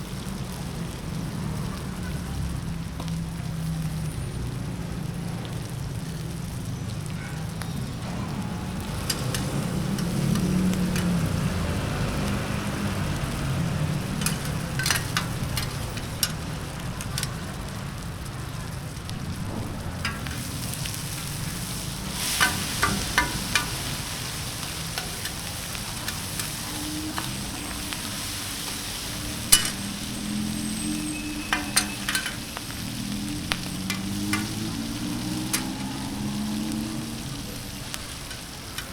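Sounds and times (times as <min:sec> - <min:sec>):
food sizzling in a wok: 0:00.0 - 0:38.9
spatula clinking and scraping pan: 0:08.8 - 0:17.8, 0:19.1 - 0:38.9.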